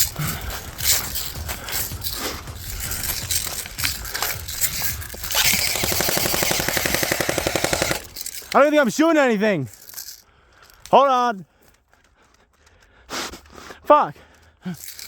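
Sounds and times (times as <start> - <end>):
clicks and rustling: 0.0 - 9.0
airsoft rifle full-auto burst: 2.9 - 8.6.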